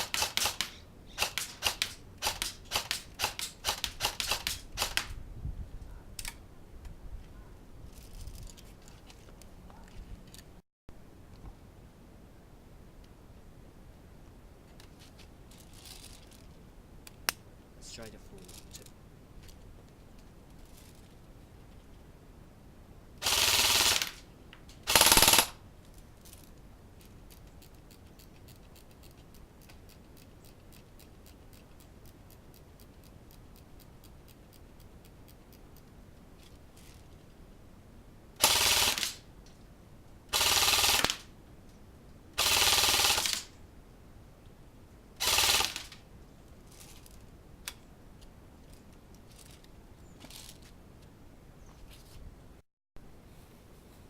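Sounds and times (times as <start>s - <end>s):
airsoft gun firing bursts: 0.0s - 5.1s, 23.2s - 24.2s, 24.9s - 25.6s, 38.4s - 39.2s, 40.3s - 41.3s, 42.4s - 43.5s, 45.2s - 46.0s.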